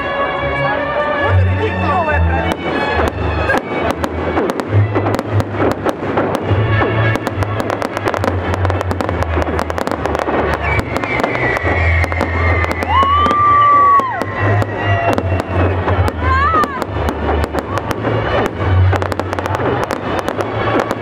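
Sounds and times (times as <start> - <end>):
fireworks bangs and crackling: 0.0 - 21.0
high steady whistling tone: 10.5 - 15.7.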